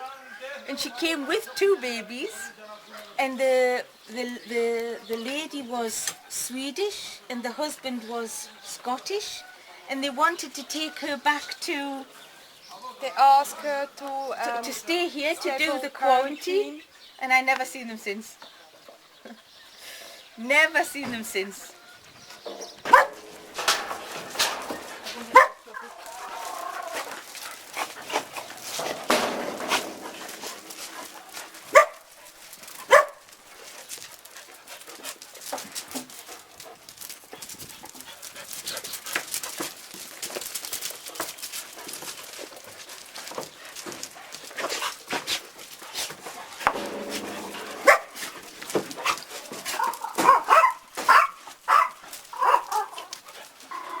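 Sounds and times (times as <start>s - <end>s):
dogs barking: 22.8s - 23.6s, 24.4s - 26.2s, 29.8s - 33.4s, 46.6s - 54.0s.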